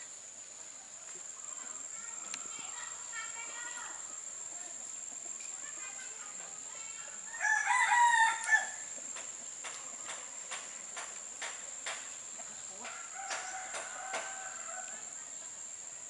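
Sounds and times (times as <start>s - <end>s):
rooster crowing: 7.2s - 9.0s, 12.8s - 15.2s.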